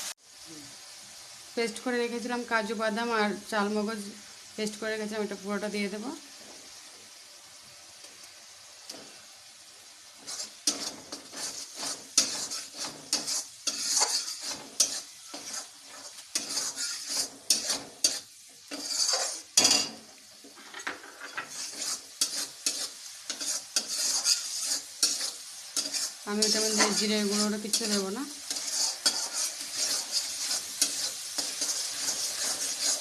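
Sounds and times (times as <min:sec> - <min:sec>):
oil sizzling: 0:00.0 - 0:33.0
spatula scraping a pan: 0:10.1 - 0:33.0.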